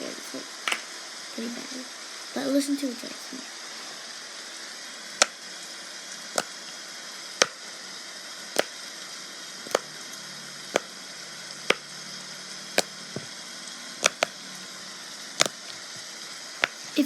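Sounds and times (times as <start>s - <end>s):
steady hiss: 0.0s - 17.0s
fidget bubbles clicking: 5.2s - 5.5s, 6.4s - 6.6s, 7.4s - 7.7s, 8.5s - 8.8s, 9.6s - 9.9s, 10.7s - 11.0s, 12.8s - 13.3s, 14.0s - 14.4s, 15.4s - 16.0s, 16.6s - 17.0s.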